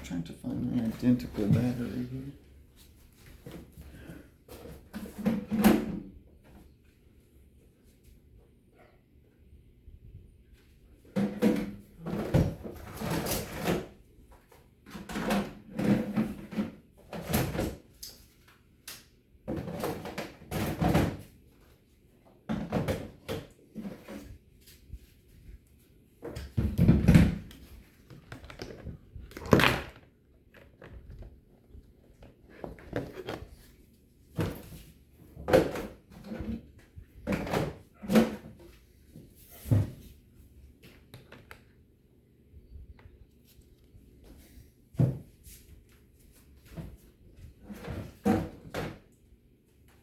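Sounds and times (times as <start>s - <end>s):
hard objects knocking and clattering: 26.3s - 33.6s.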